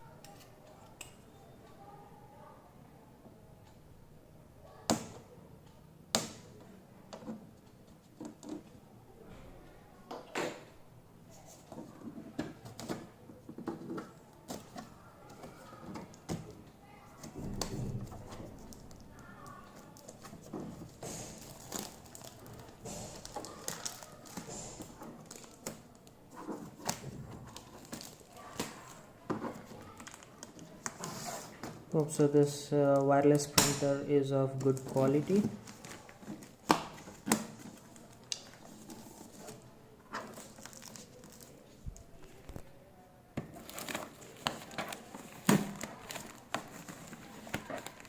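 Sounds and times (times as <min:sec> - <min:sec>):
plastic wrapping crinkling: 0:17.9 - 0:32.2, 0:34.5 - 0:42.7, 0:43.4 - 0:48.0.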